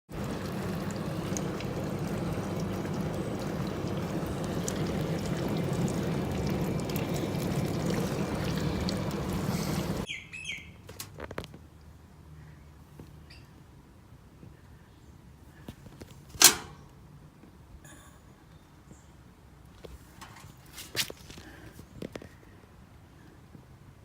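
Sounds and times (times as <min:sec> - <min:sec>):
dishwasher pump with water rushing: 0:00.1 - 0:10.1, 0:16.4 - 0:16.8.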